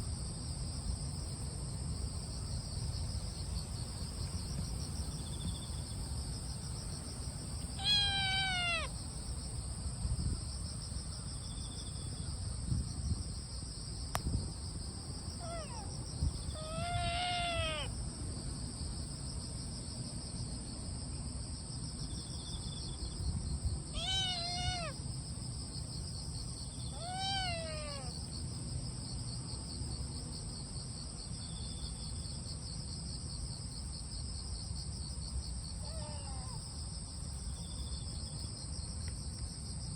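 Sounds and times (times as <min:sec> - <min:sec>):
insects chirping: 0:00.0 - 0:39.9
cat meowing: 0:07.8 - 0:08.9, 0:15.4 - 0:15.9, 0:16.5 - 0:17.9, 0:23.9 - 0:25.0, 0:26.9 - 0:28.2, 0:35.8 - 0:36.6.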